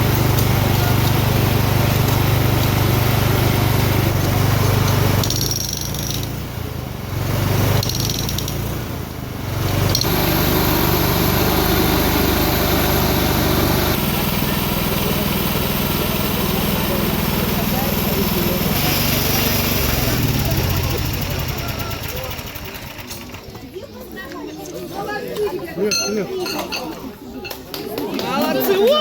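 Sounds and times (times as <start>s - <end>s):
hydraulic breaker hammering ground: 0.0s - 6.5s, 7.6s - 8.8s, 9.6s - 23.3s
engine power unit running: 0.0s - 23.7s.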